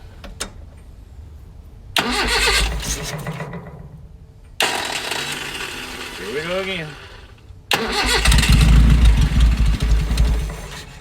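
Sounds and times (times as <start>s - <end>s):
car engine cranking on starter: 2.0s - 3.8s, 4.6s - 6.4s, 7.7s - 11.0s.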